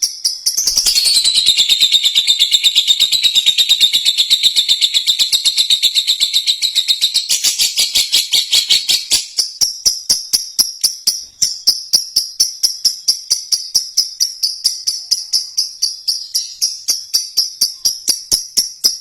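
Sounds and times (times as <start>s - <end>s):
lovebird chattering song: 0.0s - 19.0s.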